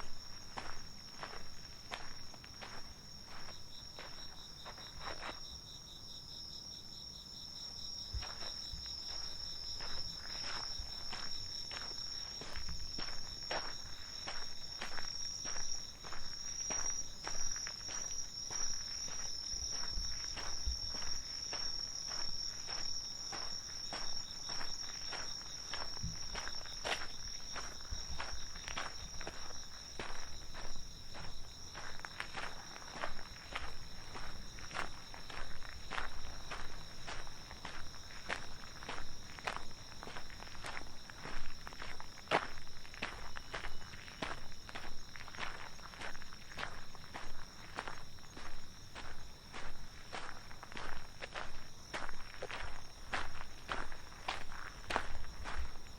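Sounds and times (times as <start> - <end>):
footsteps walking: 0.0 - 5.4, 8.1 - 55.9
crickets chirring: 0.0 - 55.9.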